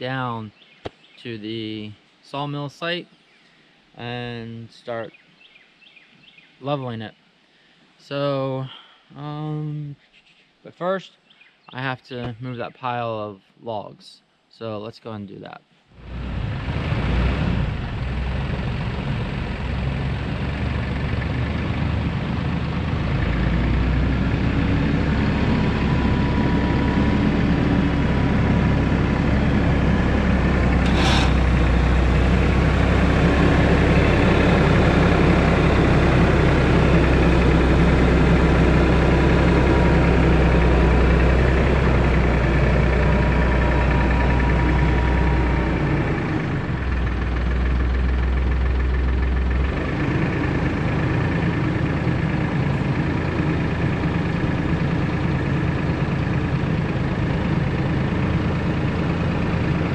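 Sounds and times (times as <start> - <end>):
tractor engine running: 16.0 - 59.9
high whine: 17.6 - 41.0, 41.6 - 47.4.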